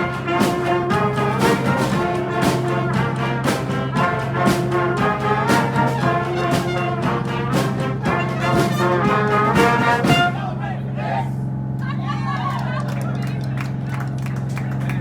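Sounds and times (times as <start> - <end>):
drum hits: 0.0 - 10.5
horn solo: 0.0 - 10.6
brass band playing: 0.0 - 10.8.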